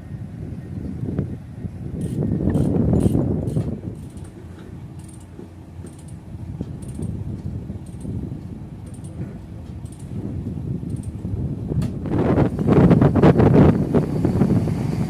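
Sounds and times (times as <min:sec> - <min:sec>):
excavator engine rumble: 0:00.0 - 0:15.0
light metallic clinks: 0:04.0 - 0:07.2, 0:08.8 - 0:10.2.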